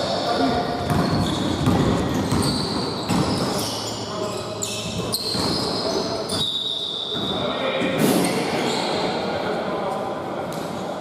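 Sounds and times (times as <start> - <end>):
basketball bouncing on indoor court: 0.8 - 3.7, 4.7 - 6.5.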